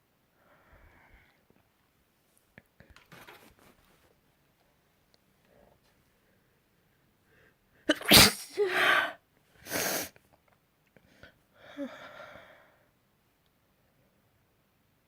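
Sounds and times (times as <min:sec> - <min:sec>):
person sneezing: 0:07.9 - 0:10.1.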